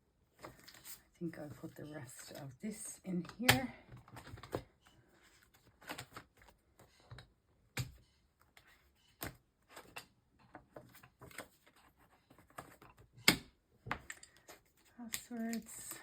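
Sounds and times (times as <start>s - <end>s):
paper inserts rustling: 0.4s - 7.0s.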